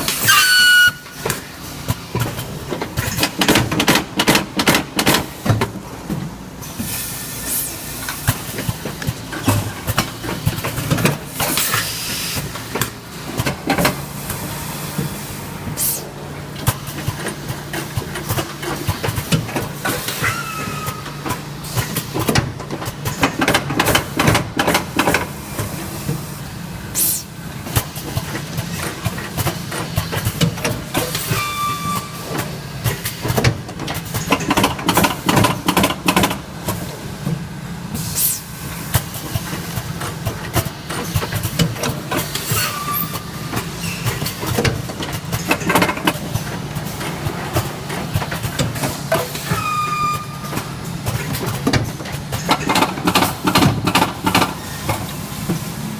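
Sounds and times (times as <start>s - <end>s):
packing machine hum and clatter: 0.0s - 55.9s
brief high squeaks: 0.2s - 1.2s, 20.2s - 21.2s, 31.2s - 32.3s, 42.5s - 44.1s, 49.4s - 50.5s
short bursts of hiss: 27.0s - 27.3s, 38.0s - 38.6s.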